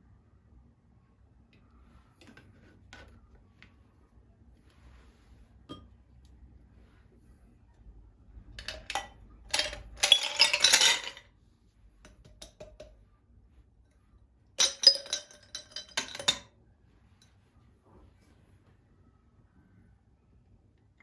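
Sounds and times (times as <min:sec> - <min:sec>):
glass and dishware clinking: 0:05.7 - 0:05.9, 0:09.5 - 0:11.2, 0:14.6 - 0:16.5.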